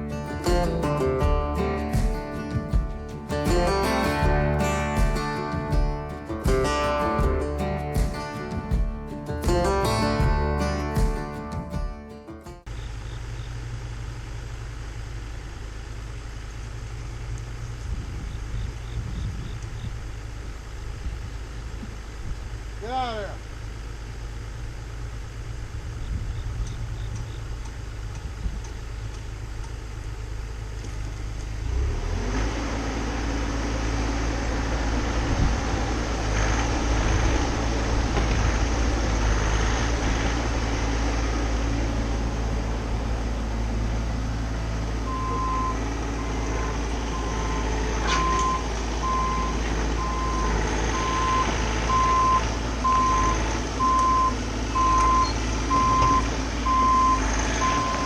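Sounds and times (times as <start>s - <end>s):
diesel engine running: 0.0s - 58.0s
backup alarm beeping: 45.1s - 58.0s.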